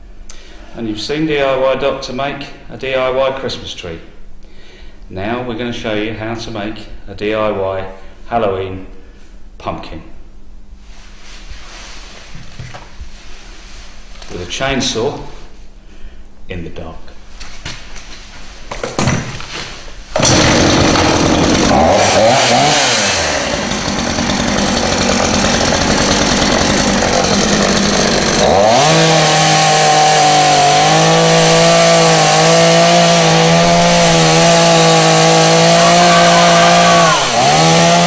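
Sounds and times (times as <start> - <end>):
chainsaw running: 20.1 - 38.0.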